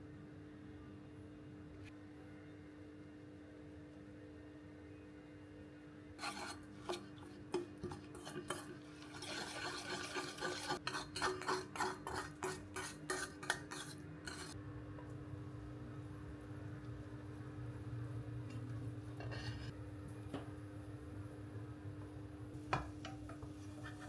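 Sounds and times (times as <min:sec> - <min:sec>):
batter stirring strokes: 0:06.2 - 0:14.6, 0:23.3 - 0:24.0.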